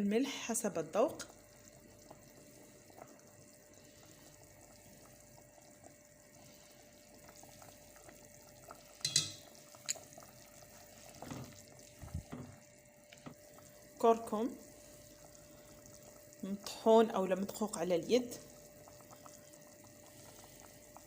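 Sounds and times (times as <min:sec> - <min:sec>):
faint kitchen hum: 0:00.0 - 0:21.0
utensil clinking: 0:09.0 - 0:10.0
soft knocks: 0:12.2 - 0:12.6.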